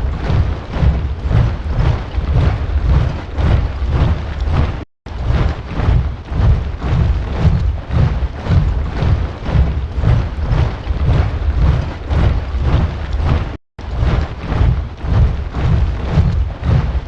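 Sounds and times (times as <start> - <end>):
boots marching in step: 5.8 - 13.6.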